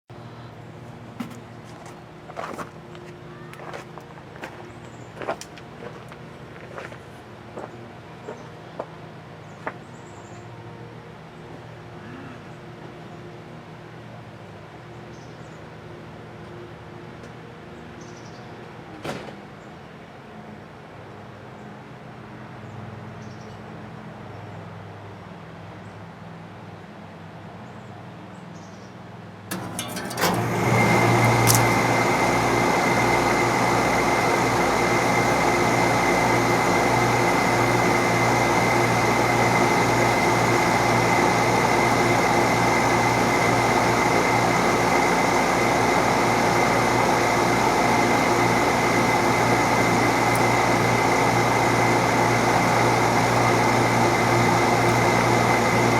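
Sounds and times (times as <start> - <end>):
heat pump clicks: 29.5 - 55.9
heat pump hum: 29.5 - 55.9
rushing fan noise: 29.5 - 55.9
thin high whine: 29.5 - 55.9.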